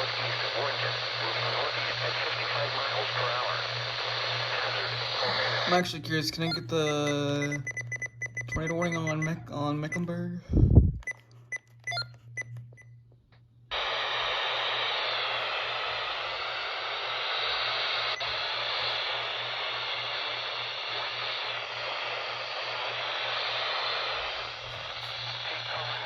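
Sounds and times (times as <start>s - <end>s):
radio static hiss: 0.0s - 7.7s, 13.7s - 26.0s
low hum: 0.0s - 26.0s.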